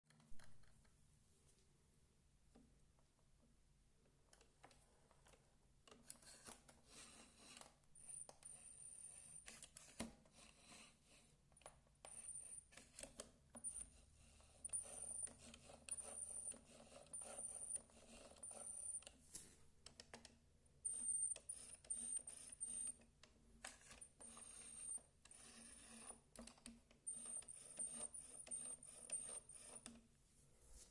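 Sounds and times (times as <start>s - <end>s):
robot vacuum wheels squeaking: 27.1s - 29.8s.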